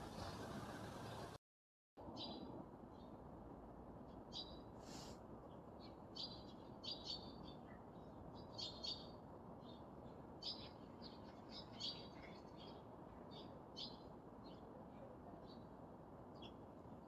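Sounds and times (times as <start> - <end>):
small birds chirping: 4.3 - 15.8.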